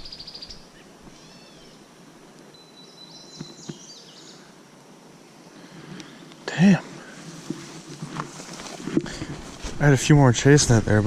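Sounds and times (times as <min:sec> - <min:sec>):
songbirds singing: 0:00.0 - 0:04.6, 0:05.2 - 0:07.1
faint outdoor hiss: 0:00.0 - 0:11.0.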